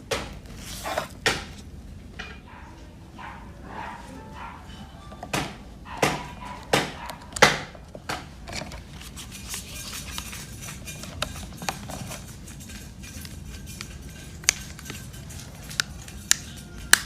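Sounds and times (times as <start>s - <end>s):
hard objects tapping and clicking: 4.7s - 17.0s.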